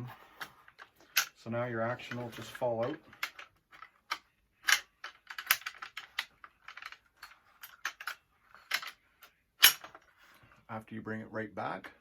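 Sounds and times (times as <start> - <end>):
rifle action clicking and clacking: 3.1 - 7.0.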